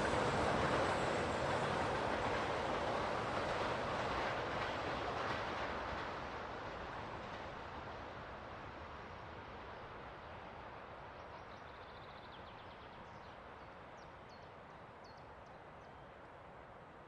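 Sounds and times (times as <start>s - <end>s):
train rumbling: 0.0s - 11.2s.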